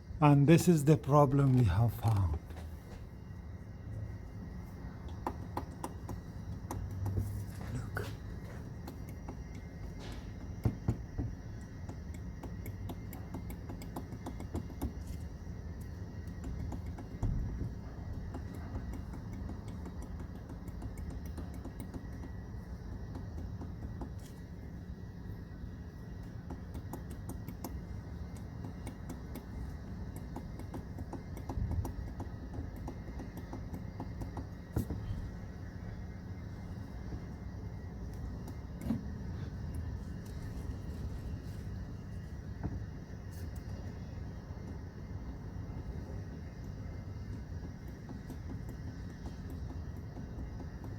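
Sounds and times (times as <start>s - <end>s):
steady low hum: 0.0s - 50.9s
hand tools clicking and tapping: 5.0s - 24.4s, 26.2s - 35.0s, 47.2s - 50.9s.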